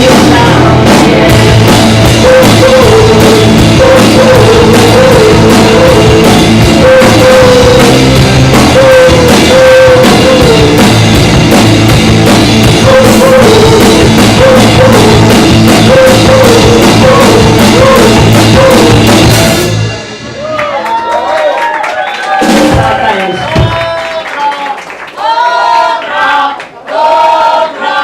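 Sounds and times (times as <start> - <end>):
guitars: 0.0 - 20.2
drum kit cymbals: 0.0 - 20.6.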